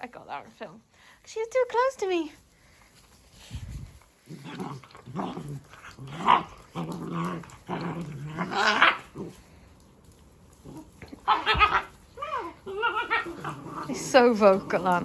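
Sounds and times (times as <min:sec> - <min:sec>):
puppies growling: 0:03.9 - 0:15.0.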